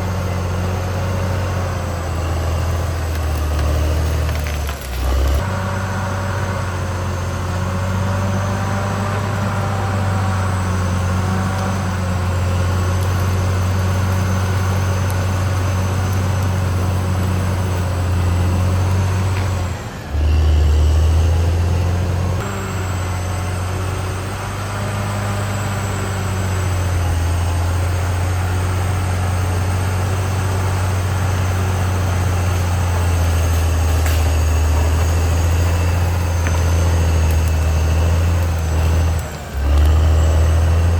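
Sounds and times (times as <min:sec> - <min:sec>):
bulldozer diesel engine droning: 0:00.0 - 0:40.9.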